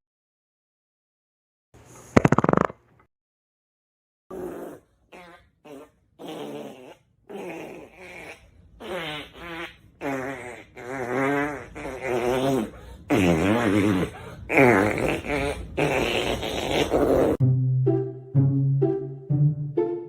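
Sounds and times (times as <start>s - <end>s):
fart sound effects: 2.2s - 2.8s, 4.3s - 17.4s.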